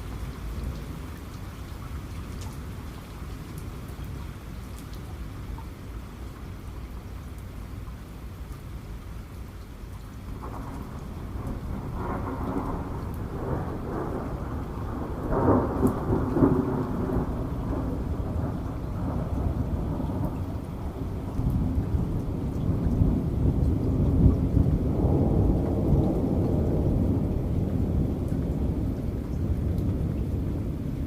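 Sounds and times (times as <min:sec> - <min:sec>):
rain falling: 0:00.0 - 0:31.0
rolling thunder: 0:10.4 - 0:31.0.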